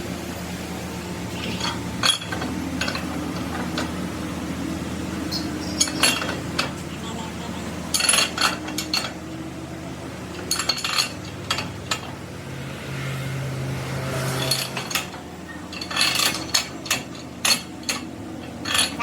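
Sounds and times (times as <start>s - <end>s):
steady low hum: 0.0s - 19.0s
metal tools clinking and knocking: 1.4s - 4.0s, 5.6s - 6.9s, 7.8s - 9.4s, 10.3s - 12.2s, 14.4s - 19.0s.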